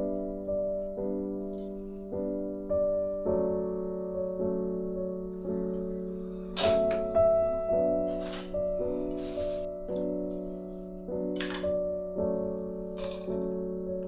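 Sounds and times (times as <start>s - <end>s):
slow soft piano chords: 0.0s - 14.0s.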